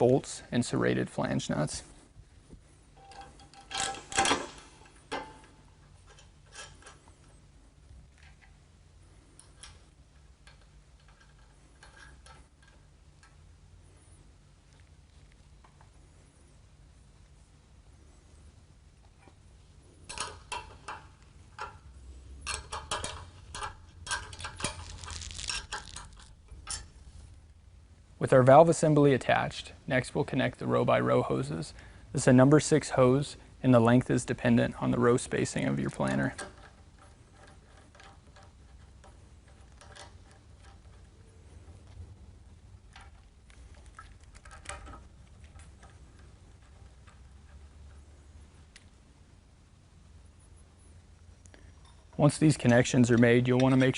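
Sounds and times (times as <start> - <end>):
steady low hum: 0.0 - 53.9
metal hose fittings clicking: 3.0 - 7.3, 20.0 - 27.2, 35.2 - 42.0.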